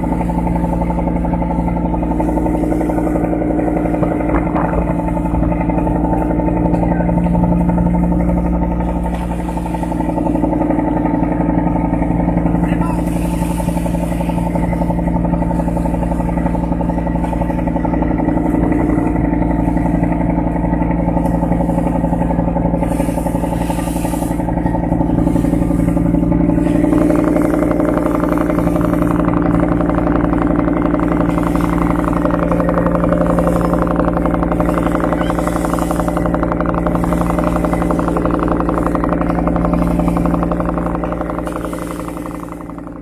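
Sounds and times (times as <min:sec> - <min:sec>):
boat engine running: 0:00.0 - 0:43.0.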